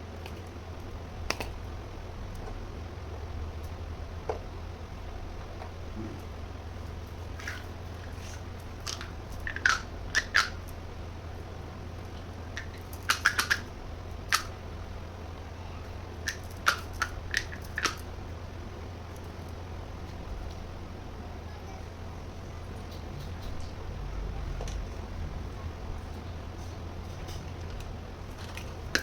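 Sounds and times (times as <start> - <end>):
low hum: 0.0 - 29.0
plastic toy pieces clicking: 8.8 - 10.6, 12.6 - 13.7, 16.2 - 18.0.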